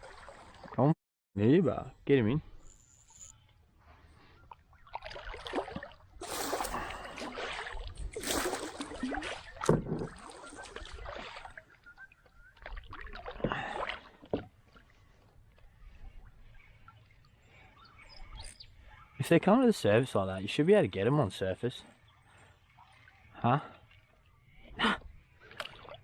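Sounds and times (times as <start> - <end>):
water splashing around a kayak: 0.0 - 0.9, 3.8 - 19.1, 22.0 - 26.0.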